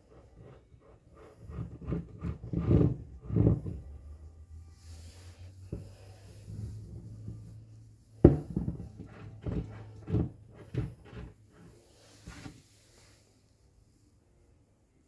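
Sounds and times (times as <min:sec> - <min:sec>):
objects knocking and clattering: 0:08.2 - 0:11.7.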